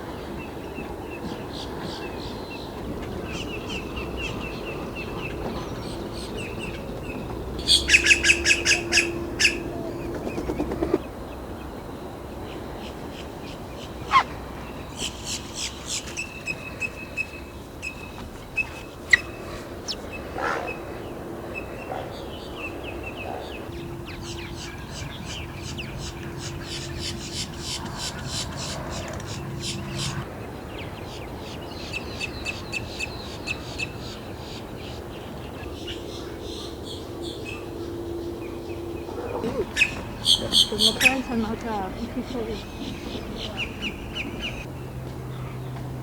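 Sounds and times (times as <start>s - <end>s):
bird ticking notes: 3.0s - 11.0s, 39.6s - 44.7s
harsh rapid bird notes: 7.6s - 11.1s, 39.4s - 41.5s.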